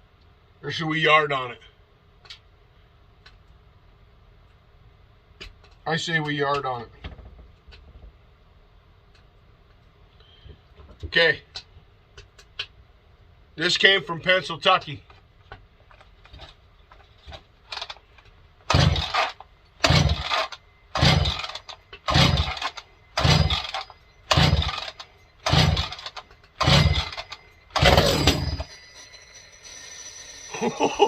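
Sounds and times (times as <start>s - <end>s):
chainsaw starter cord yanked: 17.7s - 18.0s, 18.7s - 28.7s
engine cranking over: 18.7s - 30.8s.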